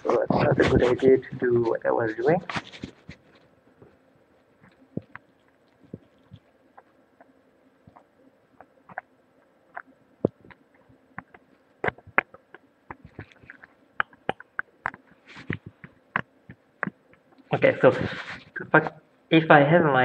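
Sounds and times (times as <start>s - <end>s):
sharp clicks and soft knocks: 4.6s - 17.5s.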